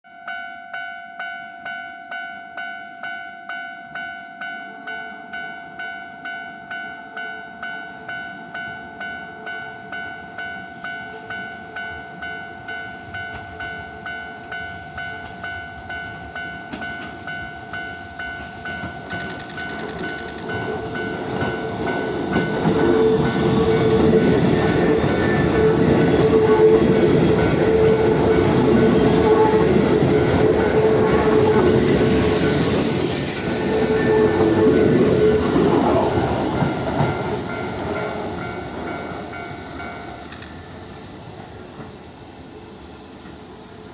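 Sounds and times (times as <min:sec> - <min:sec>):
train passing: 0:03.9 - 0:43.9
level crossing bell ringing: 0:19.1 - 0:21.1.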